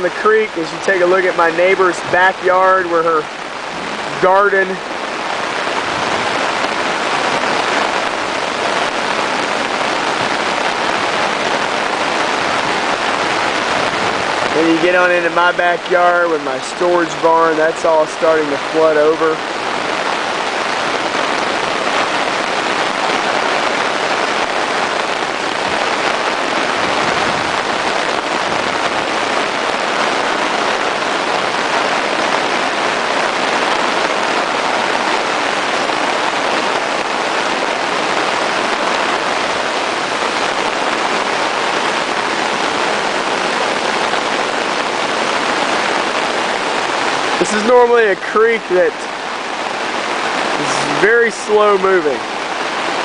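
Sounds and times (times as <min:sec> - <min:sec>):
flooded creek rushing: 0:00.0 - 0:53.0
heavy rain: 0:00.0 - 0:53.0.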